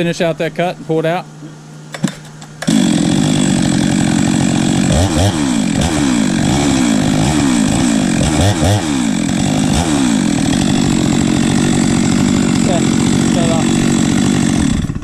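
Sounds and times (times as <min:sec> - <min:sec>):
chainsaw cutting tree trunk: 0:01.9 - 0:15.0.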